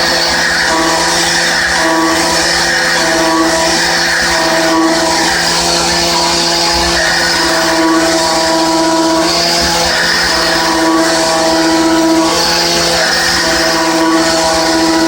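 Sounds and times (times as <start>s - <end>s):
milling machine cutting hum: 0.0s - 15.0s.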